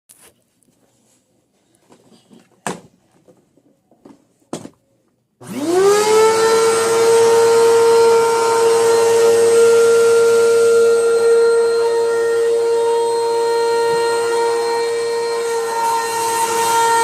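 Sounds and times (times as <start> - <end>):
vacuum cleaner motor whine: 5.4 - 17.0.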